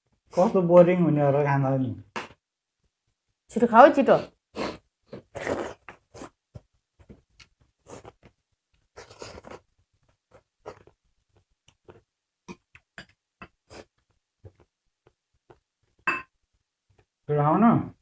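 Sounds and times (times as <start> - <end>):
soft chewing and mouth smacks: 5.1 - 16.0.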